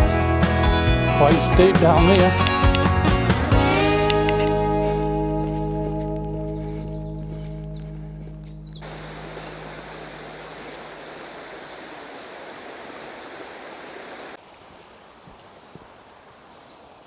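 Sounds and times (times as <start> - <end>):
music: 0.0 - 8.8
bird chirps: 5.0 - 9.6
river water rushing: 8.8 - 14.6.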